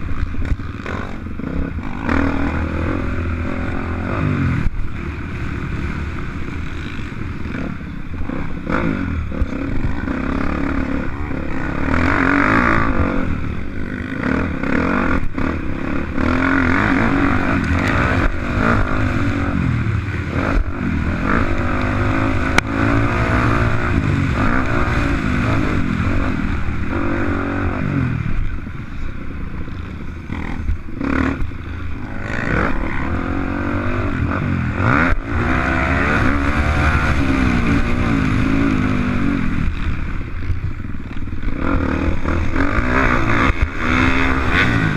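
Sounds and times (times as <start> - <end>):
motocross bike engine revving: 0.0 - 44.9.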